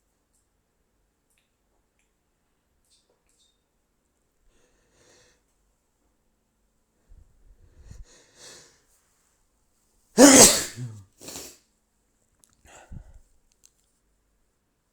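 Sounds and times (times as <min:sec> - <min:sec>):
man sneezing loudly: 0:10.2 - 0:11.4
short breathy burst: 0:10.2 - 0:11.5.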